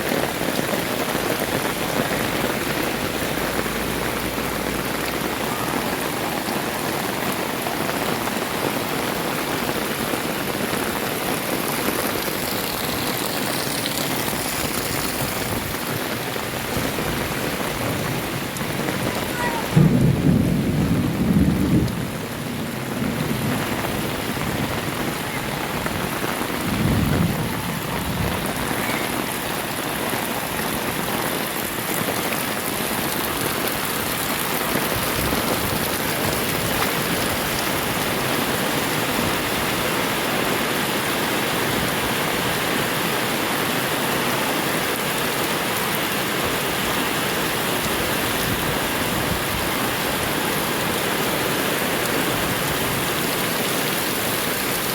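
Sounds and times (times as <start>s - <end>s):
heavy rain: 0.0s - 54.9s.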